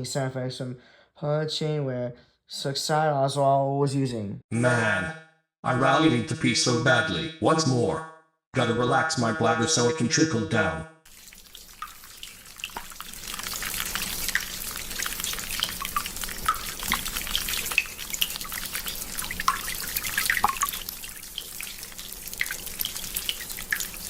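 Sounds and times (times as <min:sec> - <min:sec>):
urine splashing into toilet water: 0:11.1 - 0:24.0.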